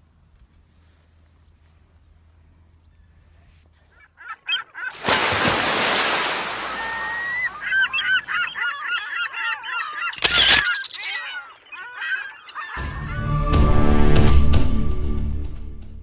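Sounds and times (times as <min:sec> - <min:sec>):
geese honking: 0:06.0 - 0:13.6
music: 0:12.8 - 0:16.0.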